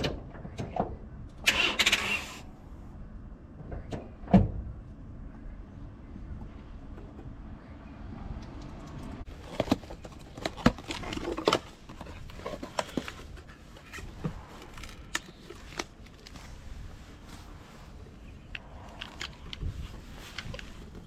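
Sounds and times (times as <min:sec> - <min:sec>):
sharp handling clicks and knocks: 0:08.4 - 0:16.4.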